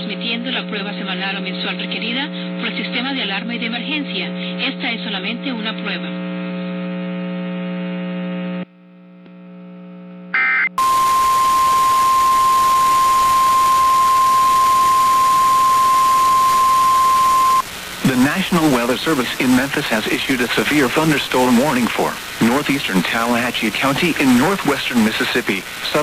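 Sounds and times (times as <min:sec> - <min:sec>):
low electrical buzz: 0:00.0 - 0:26.0
radio hiss: 0:02.0 - 0:06.0, 0:10.4 - 0:26.0
electronic chirp: 0:10.4 - 0:17.6
steady warning alarm tone: 0:10.4 - 0:17.7.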